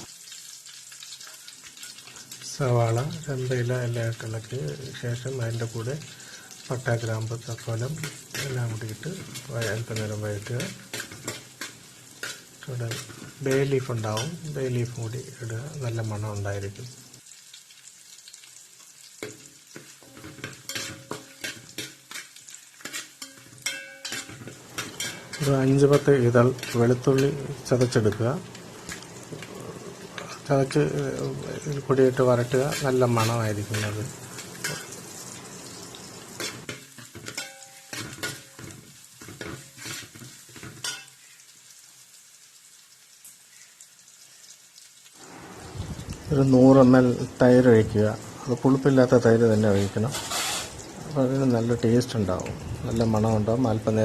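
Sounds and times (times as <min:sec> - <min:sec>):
onions sizzling in hot oil: 0:00.0 - 0:54.0
spoon scraping and knocking pan: 0:07.6 - 0:14.5, 0:19.2 - 0:28.2, 0:32.1 - 0:35.2, 0:36.4 - 0:41.2, 0:49.7 - 0:50.8.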